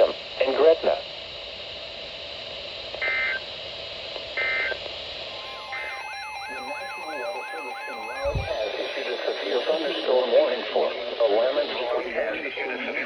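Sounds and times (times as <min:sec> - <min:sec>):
repeating warbling tone: 0:05.3 - 0:10.0
steady tones: 0:05.3 - 0:10.0
touch-tone beeps: 0:05.3 - 0:10.1
radio channel hiss: 0:05.3 - 0:13.0.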